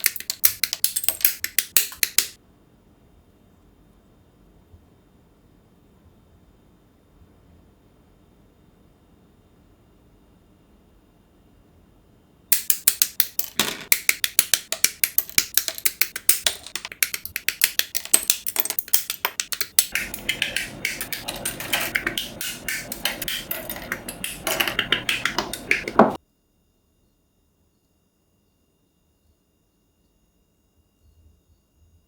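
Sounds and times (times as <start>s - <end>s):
plastic model parts clicking: 0.0s - 2.4s, 12.5s - 26.1s.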